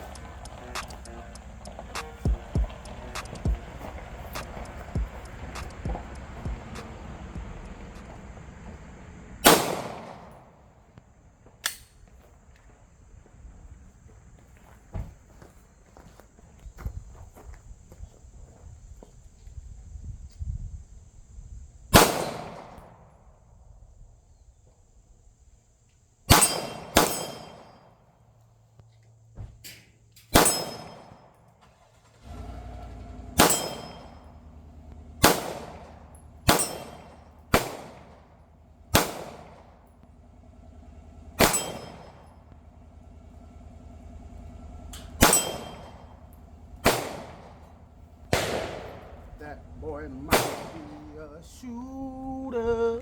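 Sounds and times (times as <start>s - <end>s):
pistol shots: 0.0s - 8.2s, 9.4s - 10.8s, 21.9s - 23.2s, 26.3s - 28.0s, 30.3s - 31.4s, 33.3s - 34.6s, 35.2s - 40.0s, 41.4s - 42.4s, 45.0s - 51.3s
steel target ringing clang: 26.3s - 28.0s, 30.3s - 31.4s, 33.4s - 34.6s, 35.2s - 38.2s, 41.4s - 42.6s, 44.8s - 47.8s.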